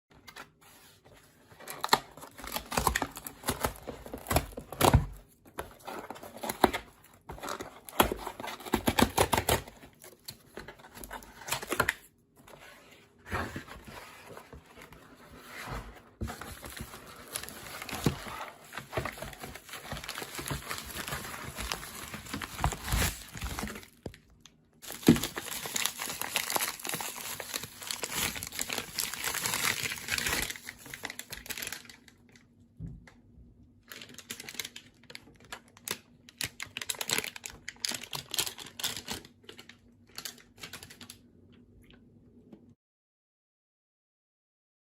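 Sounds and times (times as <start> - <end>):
plastic packaging crinkling and tearing: 1.6 - 12.1, 16.2 - 32.4, 33.9 - 41.2.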